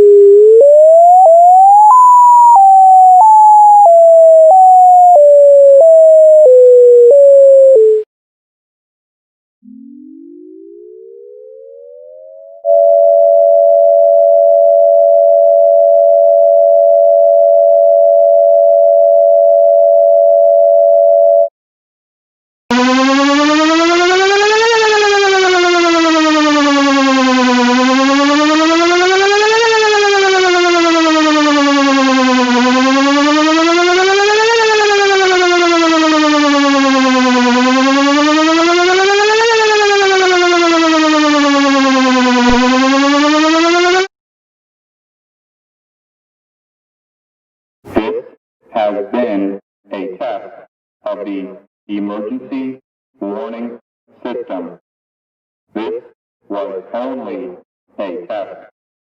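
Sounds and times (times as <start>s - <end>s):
buzzy siren wail: 0.0s - 8.0s, 9.7s - 13.9s, 22.7s - 44.1s
two-tone steady siren: 0.0s - 8.1s, 9.6s - 21.5s, 22.7s - 44.1s.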